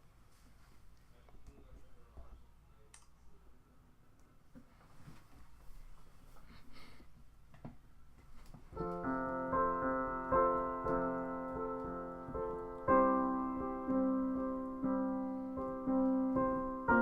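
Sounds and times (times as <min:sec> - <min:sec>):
slow piano chords: 0:08.7 - 0:17.0.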